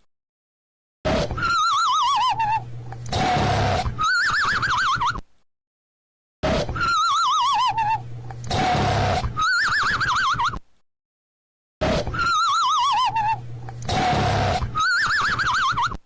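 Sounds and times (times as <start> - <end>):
cartoon snoring with whistle: 1.1 - 5.0, 6.4 - 10.3, 11.8 - 16.0.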